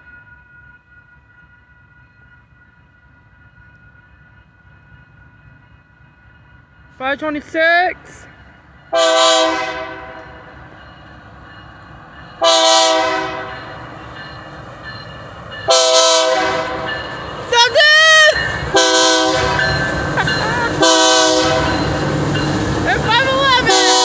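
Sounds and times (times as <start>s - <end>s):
locomotive rumble: 2.4s - 24.0s
train horn blasts: 8.9s - 10.4s, 12.4s - 13.7s, 15.7s - 17.0s, 18.7s - 19.8s, 20.8s - 22.0s, 23.3s - 24.0s
person shouting: 17.5s - 18.4s.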